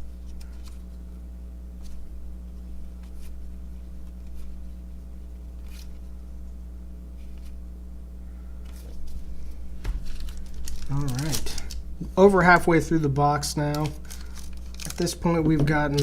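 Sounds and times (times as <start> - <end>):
low electrical hum: 0.0 - 16.0
trading cards swishing: 1.8 - 6.1.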